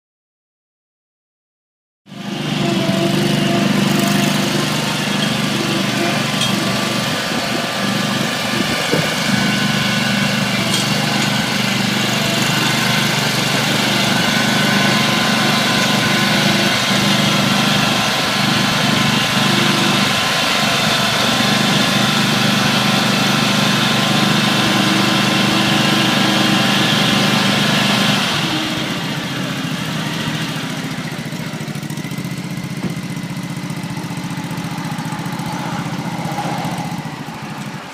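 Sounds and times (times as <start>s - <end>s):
riding lawn mower engine running: 2.1s - 37.9s.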